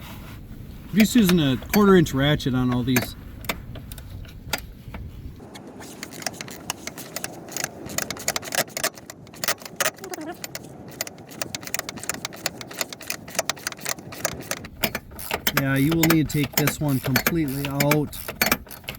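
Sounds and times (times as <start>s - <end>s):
socket ratchet clicking: 1.2s - 2.1s, 5.9s - 18.9s.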